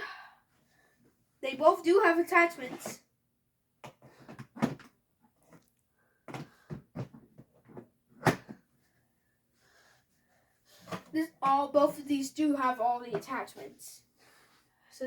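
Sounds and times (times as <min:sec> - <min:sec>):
plastic attachments knocking and clicking: 0:03.8 - 0:05.0, 0:06.3 - 0:08.6.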